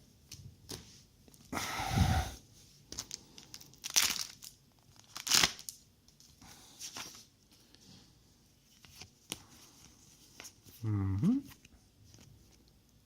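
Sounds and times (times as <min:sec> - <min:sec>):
wrapper tearing and crinkling: 0:02.9 - 0:05.8.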